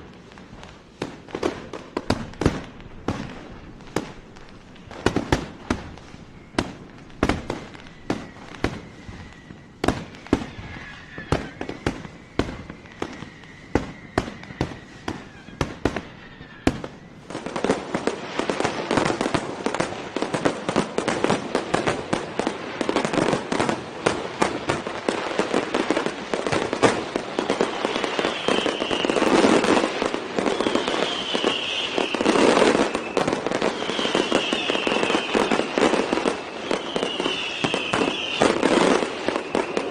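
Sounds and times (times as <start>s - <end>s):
fireworks banging and crackling: 0.0s - 39.9s.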